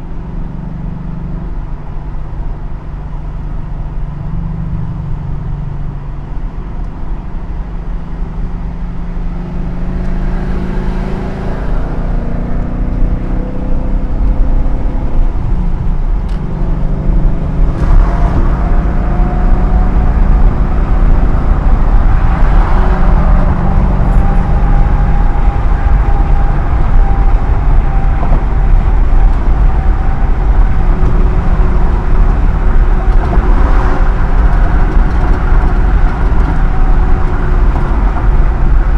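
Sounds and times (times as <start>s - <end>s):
car engine accelerating hard: 0.0s - 38.9s.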